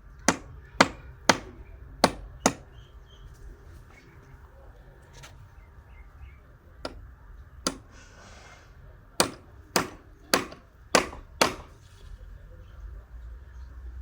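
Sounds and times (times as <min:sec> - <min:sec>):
sharp knocks: 0:00.3 - 0:02.7, 0:07.6 - 0:07.9, 0:09.2 - 0:11.8
short scraping noise: 0:07.9 - 0:08.8.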